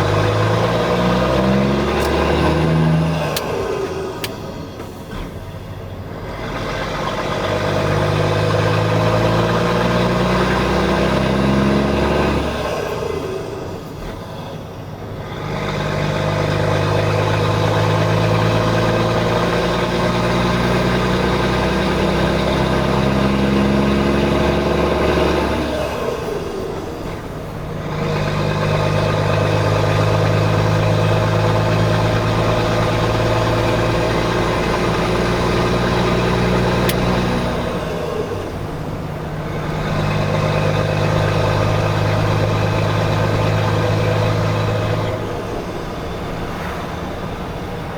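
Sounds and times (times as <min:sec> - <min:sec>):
diesel truck engine revving: 0:00.0 - 0:47.9.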